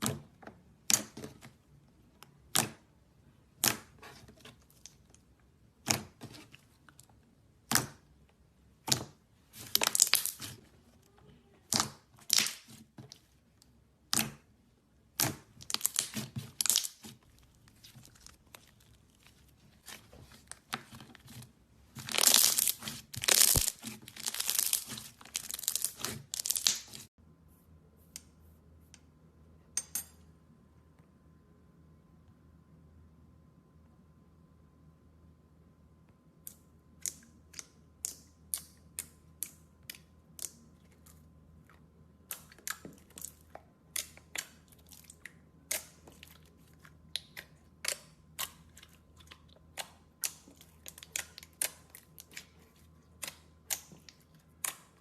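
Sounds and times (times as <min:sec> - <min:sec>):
slime popping and crackling: 0:08.9 - 0:10.6, 0:15.1 - 0:19.3, 0:21.9 - 0:27.1.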